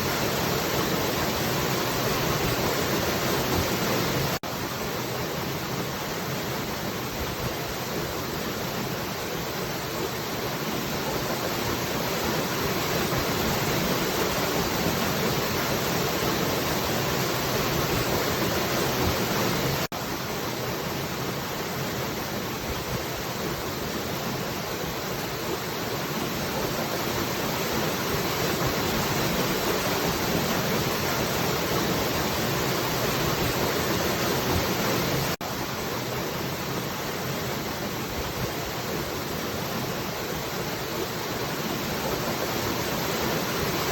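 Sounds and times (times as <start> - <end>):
falling water rushing: 0.0 - 43.9.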